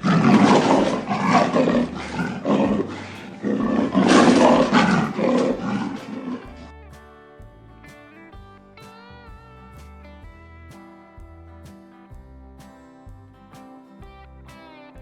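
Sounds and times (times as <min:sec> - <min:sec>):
lion roaring: 0:00.0 - 0:06.7.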